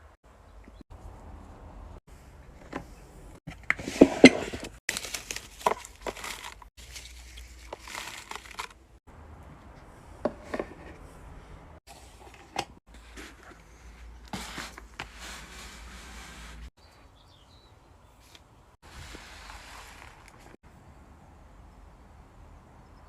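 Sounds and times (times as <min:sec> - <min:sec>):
plastic crinkling and rustling: 0:04.6 - 0:08.8.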